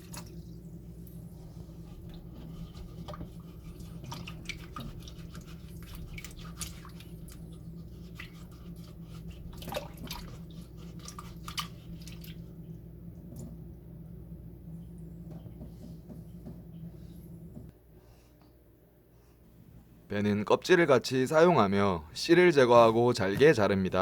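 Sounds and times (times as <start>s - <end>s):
water drips and small splashes: 0.0s - 1.4s, 2.0s - 13.7s
steady low hum: 0.0s - 24.0s.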